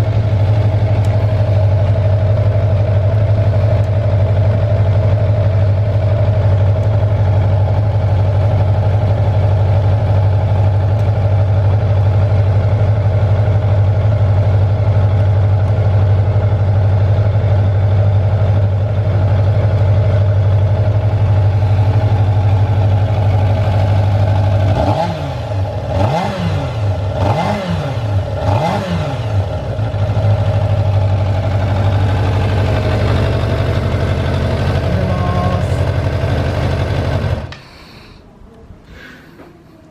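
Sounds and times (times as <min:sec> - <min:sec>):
motorcycle engine idling and revving: 0:00.0 - 0:37.7.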